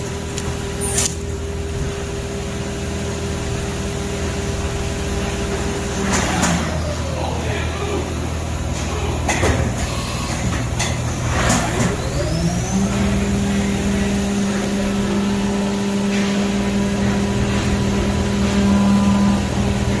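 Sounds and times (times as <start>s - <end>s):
motor winding up and humming: 8.0s - 20.0s
knocks and clanks: 8.8s - 12.2s.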